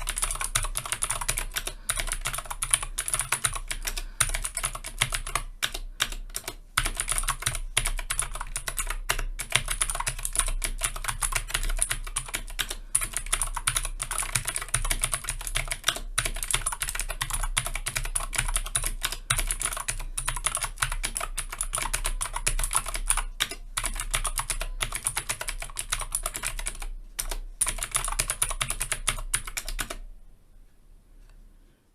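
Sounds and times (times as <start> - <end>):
mechanical keyboard typing: 0.0 - 30.0.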